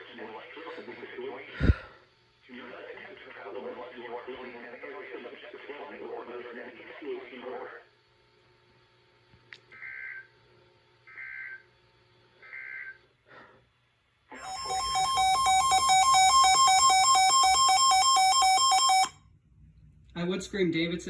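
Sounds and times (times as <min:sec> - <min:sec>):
rapidly pulsing electronic alarm: 0:09.8 - 0:10.3, 0:11.0 - 0:11.7, 0:12.4 - 0:13.1, 0:14.4 - 0:19.2.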